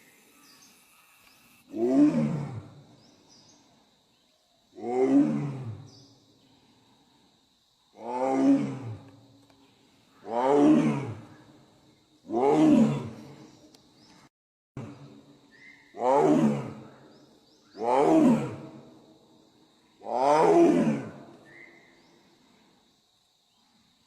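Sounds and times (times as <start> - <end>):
tiger roaring: 1.7 - 2.7, 4.8 - 5.8, 8.0 - 9.1, 10.2 - 11.3, 12.3 - 13.3, 16.0 - 16.8, 17.8 - 18.8, 20.1 - 21.2.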